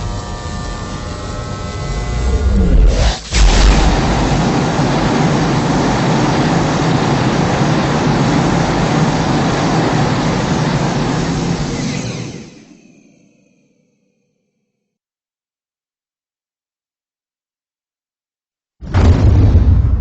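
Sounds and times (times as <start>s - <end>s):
dense low rushing noise: 2.0s - 11.4s
loud blast: 2.0s - 12.6s, 18.8s - 20.0s.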